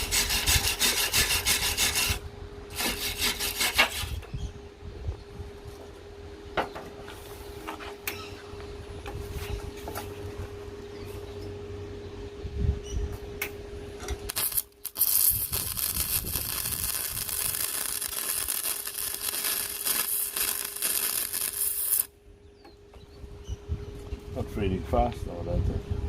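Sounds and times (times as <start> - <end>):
welding arc crackling: 14.3 - 22.1.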